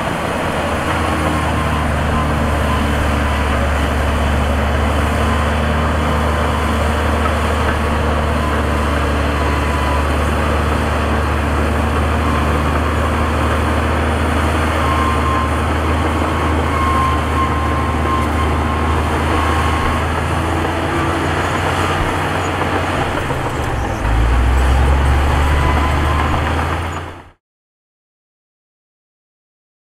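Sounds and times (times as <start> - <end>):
heavy diesel machinery rumbling: 0.0 - 27.4.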